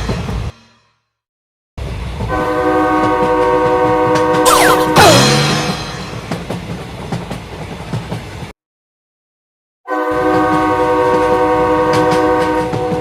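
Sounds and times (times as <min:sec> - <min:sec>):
multi-note train horn: 0:02.3 - 0:05.3, 0:09.9 - 0:13.0.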